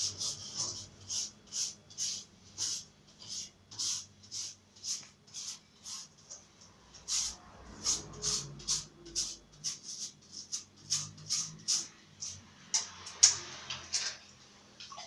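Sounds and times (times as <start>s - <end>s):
brush scrubbing a grille: 0.0s - 6.3s, 7.0s - 12.4s.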